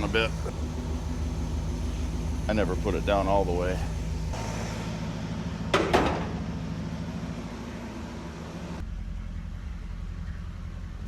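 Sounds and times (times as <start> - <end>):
car engine idling: 0.0 - 11.0
sharp knocks: 5.7 - 6.4.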